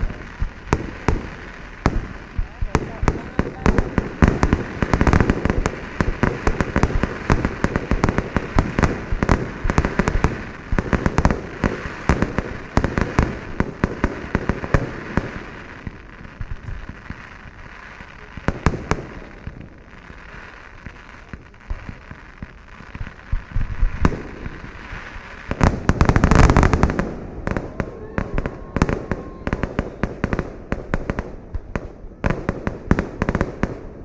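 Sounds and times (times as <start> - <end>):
fireworks bangs: 0.0 - 34.0.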